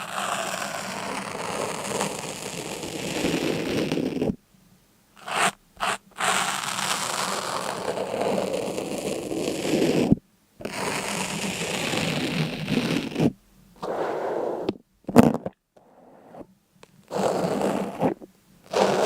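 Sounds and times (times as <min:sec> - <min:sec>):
scraping rasping noise: 0:17.1 - 0:19.0.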